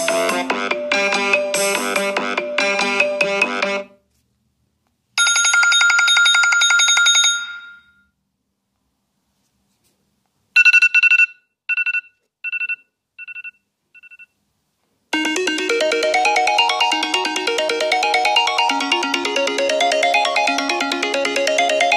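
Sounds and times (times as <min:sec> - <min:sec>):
melodic ringtone: 0:00.0 - 0:03.8, 0:15.1 - 0:21.9
telephone bell trill ringtone: 0:05.2 - 0:08.1, 0:15.2 - 0:21.9.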